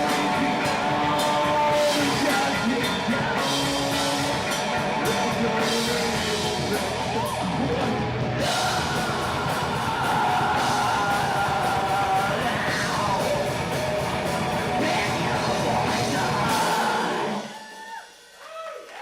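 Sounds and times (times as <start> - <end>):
distorted electric guitars: 0.0 - 18.0
yelled vocals: 0.0 - 18.1
drum kit with crashing cymbals: 0.0 - 18.9.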